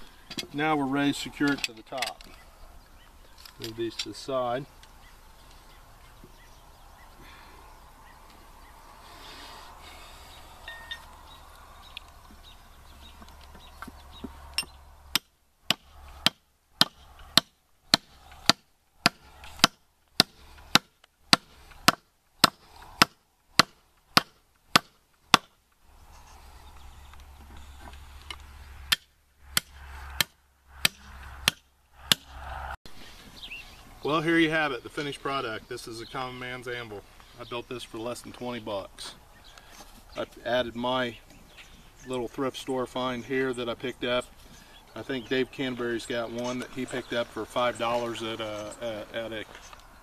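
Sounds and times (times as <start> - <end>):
hammer strikes: 28.9 - 32.3.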